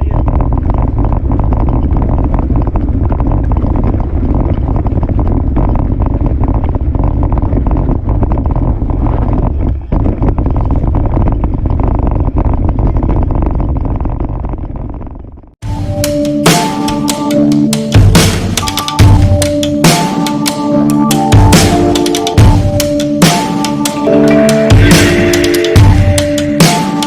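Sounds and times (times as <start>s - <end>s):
wind buffeting microphone: 0.0s - 15.6s.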